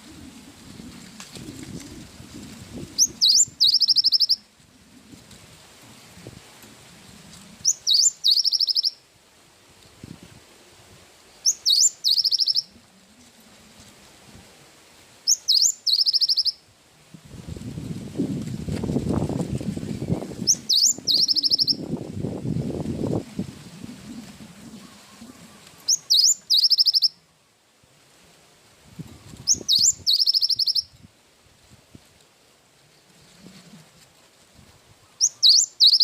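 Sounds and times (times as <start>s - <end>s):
bird singing whistles and trills: 3.0s - 4.4s, 7.6s - 9.0s, 11.4s - 12.8s, 15.3s - 16.6s, 19.8s - 21.9s, 25.8s - 27.2s, 29.4s - 31.0s, 35.2s - 36.0s.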